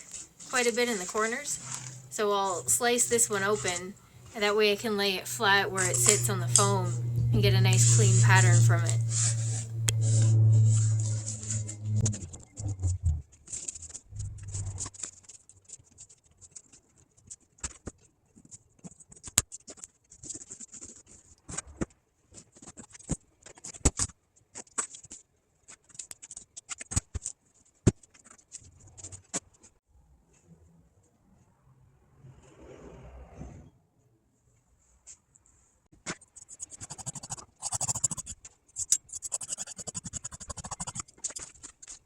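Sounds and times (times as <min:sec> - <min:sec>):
low bumps: 0:00.6 - 0:13.3, 0:13.9 - 0:14.8.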